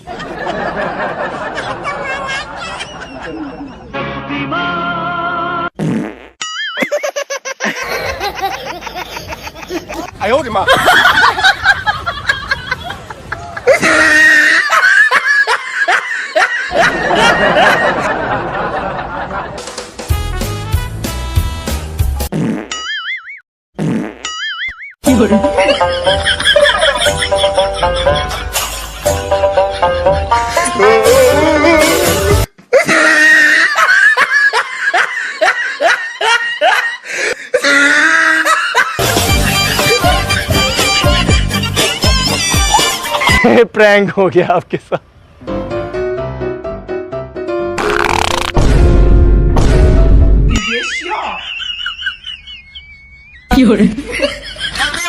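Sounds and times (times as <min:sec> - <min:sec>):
people laughing loudly: 0:00.0 - 0:03.9, 0:06.8 - 0:19.6, 0:25.1 - 0:32.1, 0:32.8 - 0:43.5, 0:50.6 - 0:55.0
music: 0:04.0 - 0:05.6, 0:19.6 - 0:22.3, 0:25.0 - 0:32.5, 0:39.0 - 0:43.4, 0:45.4 - 0:48.0, 0:48.6 - 0:50.5.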